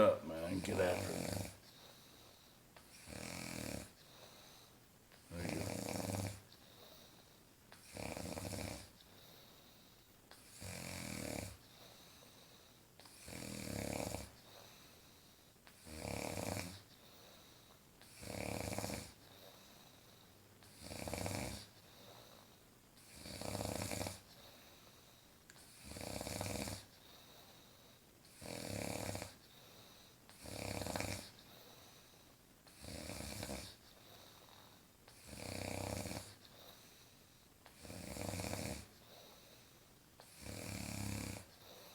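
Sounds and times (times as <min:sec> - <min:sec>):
woman snoring: 0:00.0 - 0:01.6, 0:03.0 - 0:03.9, 0:05.3 - 0:06.4, 0:07.9 - 0:08.9, 0:13.2 - 0:14.3, 0:15.8 - 0:16.8, 0:18.2 - 0:19.2, 0:20.8 - 0:21.6, 0:23.1 - 0:24.3, 0:25.8 - 0:26.9, 0:28.4 - 0:29.4, 0:30.4 - 0:31.3, 0:32.8 - 0:33.7, 0:35.2 - 0:36.4, 0:37.8 - 0:38.9, 0:40.2 - 0:41.5
quiet breathing: 0:00.0 - 0:41.9.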